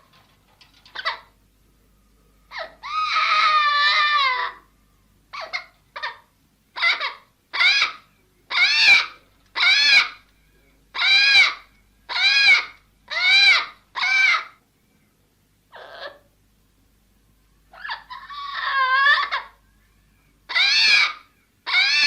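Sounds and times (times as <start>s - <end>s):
parrot calling: 0.8s - 1.4s, 2.5s - 4.7s, 5.3s - 10.2s, 10.9s - 14.6s, 15.7s - 16.3s, 17.7s - 19.6s, 20.5s - 22.0s.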